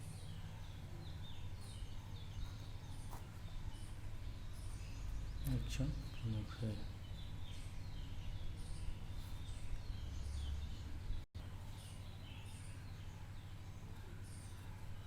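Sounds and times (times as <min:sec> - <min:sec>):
birds chirping: 0:00.0 - 0:15.0
steady low hum: 0:00.0 - 0:15.0.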